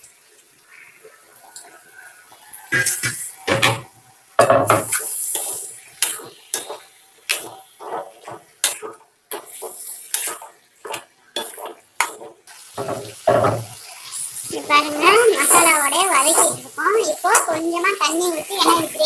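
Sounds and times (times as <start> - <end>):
masala sizzling: 0.0 - 19.0
ladle scraping metal pan: 4.6 - 13.7.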